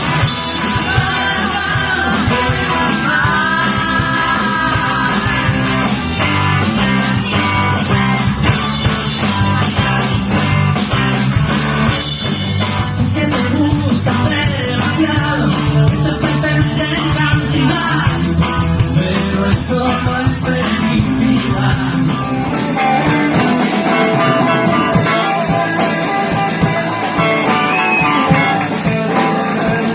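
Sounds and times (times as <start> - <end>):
person singing: 0.0 - 6.1, 12.8 - 23.3, 24.1 - 29.9
bass guitar: 0.0 - 29.9
drum kit: 0.0 - 29.9
electric guitar: 0.0 - 29.9.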